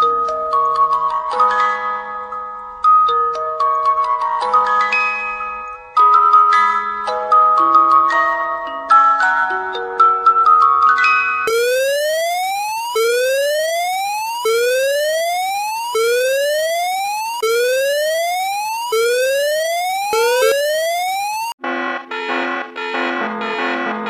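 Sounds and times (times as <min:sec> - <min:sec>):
emergency siren whooping: 0:11.5 - 0:21.6.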